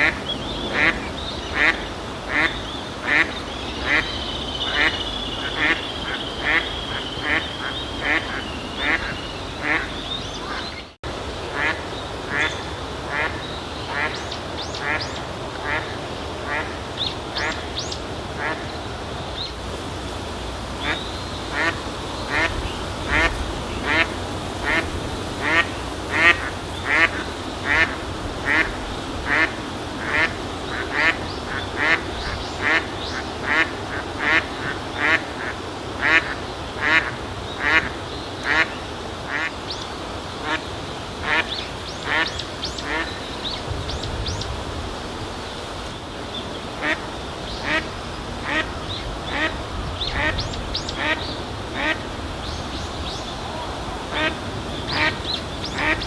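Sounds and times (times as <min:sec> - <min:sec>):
outdoor ambience hiss: 0:00.0 - 0:56.0
duck quacking: 0:01.6 - 0:10.6, 0:20.8 - 0:24.8, 0:25.4 - 0:38.7, 0:47.6 - 0:48.7, 0:54.1 - 0:55.2, 0:55.8 - 0:56.0.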